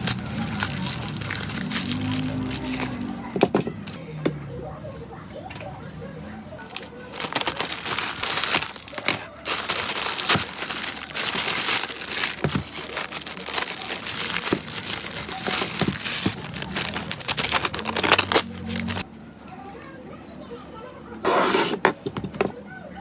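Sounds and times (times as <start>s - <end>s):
packaging crinkling and rustling: 0.0s - 3.2s, 6.6s - 19.0s.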